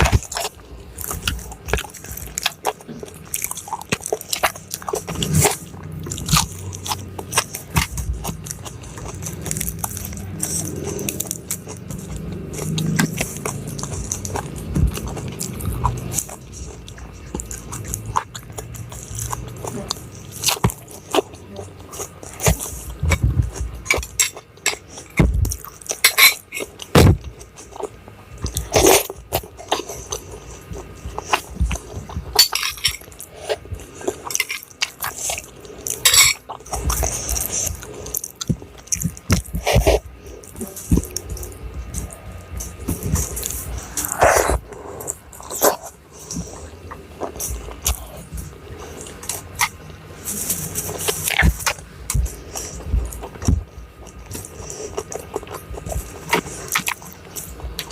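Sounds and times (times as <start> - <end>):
chewing and crunching food: 0.0 - 57.9
dishes clinking: 36.0 - 36.4.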